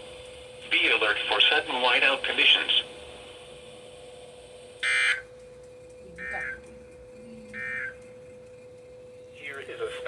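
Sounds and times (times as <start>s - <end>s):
faint steady hum: 0.0s - 10.0s
electronic beeps: 6.1s - 6.6s, 7.5s - 8.0s.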